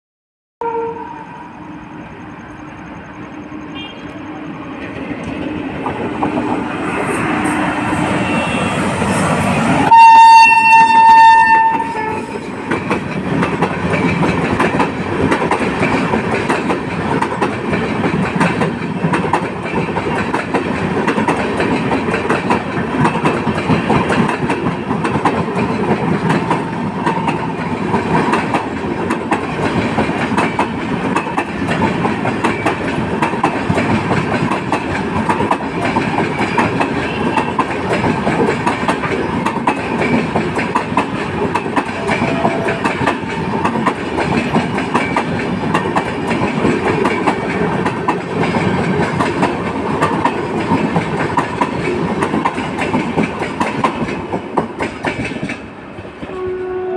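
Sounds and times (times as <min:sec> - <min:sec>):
locomotive horn blast: 0:00.6 - 0:01.5, 0:03.7 - 0:04.4, 0:07.0 - 0:12.4, 0:56.3 - 0:56.9
train approaching: 0:00.6 - 0:56.9
train wheels clattering over rails: 0:04.8 - 0:56.4.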